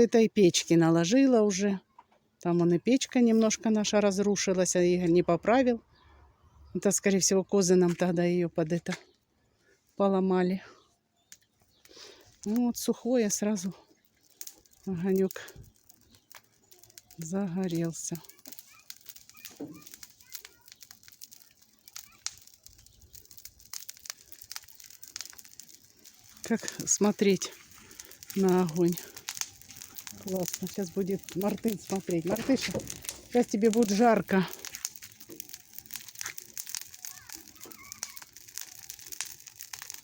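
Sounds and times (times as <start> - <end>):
bonfire crackling and popping: 10.7 - 40.0.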